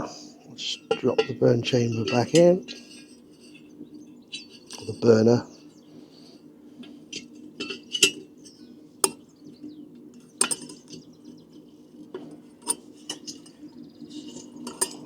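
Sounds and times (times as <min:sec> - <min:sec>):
metal clinks and taps: 0:04.3 - 0:05.0, 0:07.1 - 0:09.2, 0:10.2 - 0:11.0, 0:12.2 - 0:15.0.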